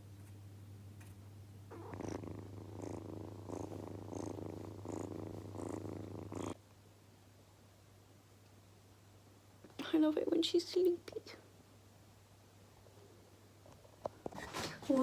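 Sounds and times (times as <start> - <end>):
kitten purring: 1.0 - 6.6.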